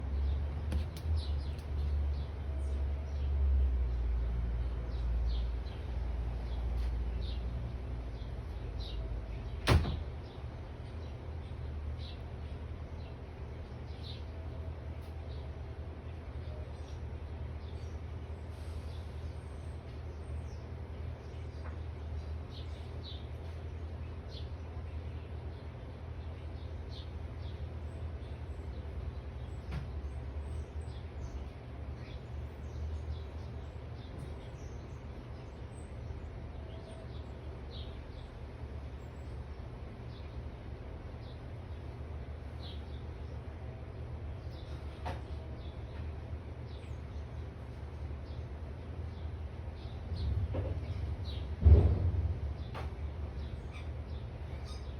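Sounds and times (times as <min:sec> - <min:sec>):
birds chirping: 0:00.0 - 0:54.9
steady low rumble: 0:45.6 - 0:54.9.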